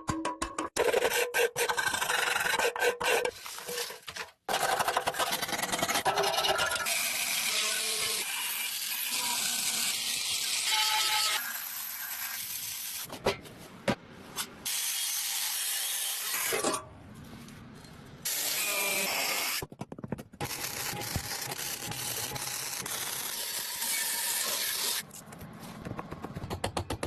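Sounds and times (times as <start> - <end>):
tools scraping and rubbing: 0.8 - 6.9.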